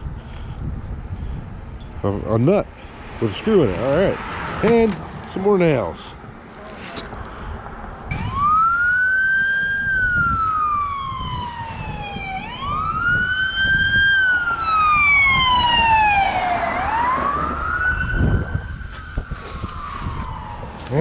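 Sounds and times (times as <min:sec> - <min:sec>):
emergency vehicle siren wailing: 0:08.1 - 0:21.0.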